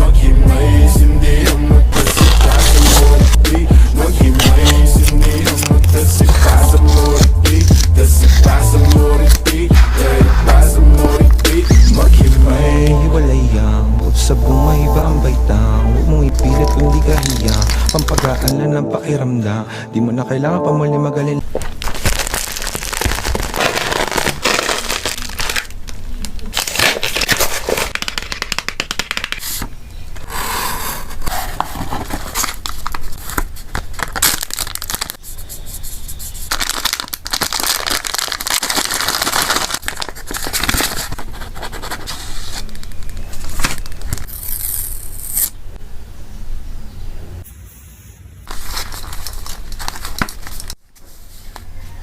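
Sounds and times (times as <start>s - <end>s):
plastic and paper crinkling: 1.9s - 3.4s, 4.0s - 10.2s, 16.3s - 18.5s, 21.4s - 29.7s, 31.1s - 44.9s, 48.5s - 51.8s
packaging tearing: 1.9s - 10.2s, 16.4s - 18.5s, 21.4s - 29.6s, 31.0s - 35.5s, 36.3s - 45.6s, 48.5s - 50.8s.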